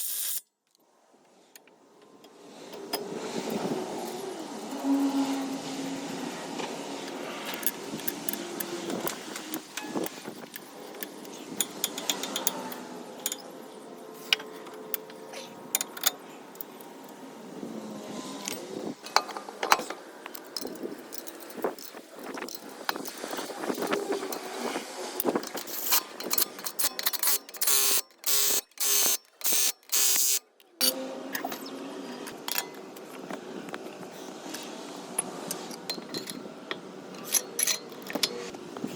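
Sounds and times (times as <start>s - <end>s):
metallic clicks and clinks: 19.0s - 24.5s, 25.2s - 31.6s, 37.1s - 38.4s.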